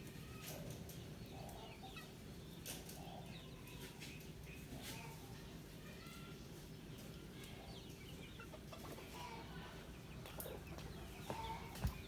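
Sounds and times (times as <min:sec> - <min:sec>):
faint chickens clucking: 0:06.3 - 0:12.0.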